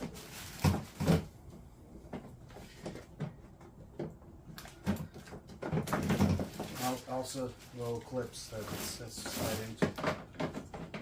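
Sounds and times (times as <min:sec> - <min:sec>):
hard plastic parts knocking: 0:00.5 - 0:07.0, 0:09.7 - 0:11.0.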